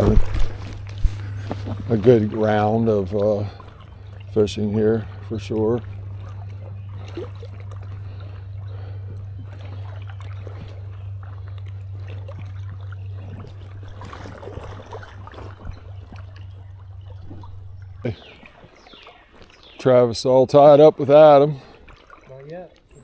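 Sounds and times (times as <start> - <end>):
small knocks and splashes: 0.0 - 4.6, 9.2 - 19.8, 21.6 - 23.0
creek water flowing: 0.0 - 23.0
steady low hum: 0.0 - 23.0.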